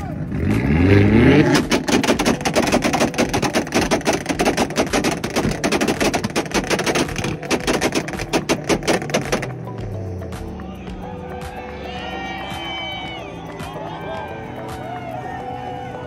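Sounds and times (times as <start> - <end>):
exhaust pops and bangs: 0.5 - 10.0.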